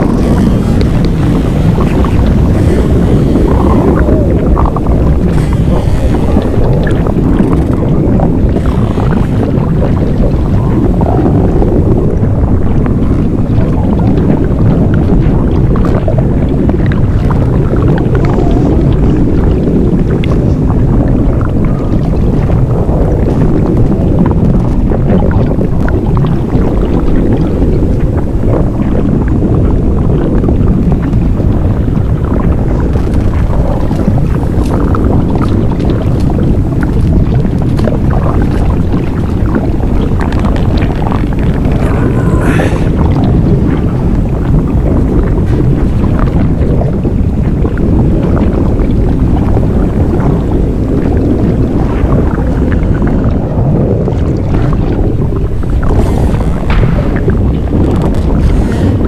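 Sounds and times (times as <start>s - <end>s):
small crackles and ticks: 0.0s - 16.2s, 16.9s - 42.8s, 55.8s - 59.0s
continuous low rumble: 0.0s - 59.0s.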